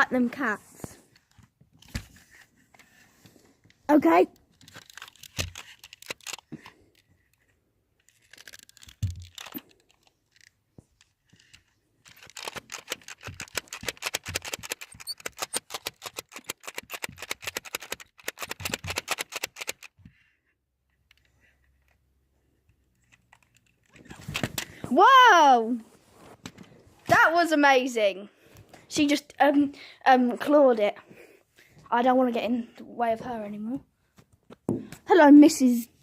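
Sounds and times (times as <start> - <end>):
plastic grabber jaws clicking: 4.4 - 7.4, 8.0 - 20.2.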